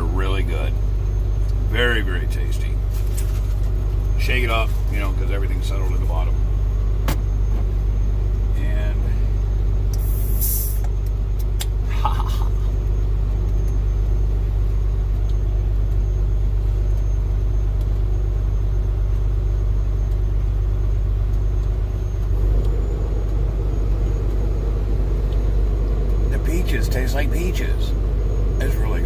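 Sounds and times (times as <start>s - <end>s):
truck engine idling: 0.0s - 29.0s.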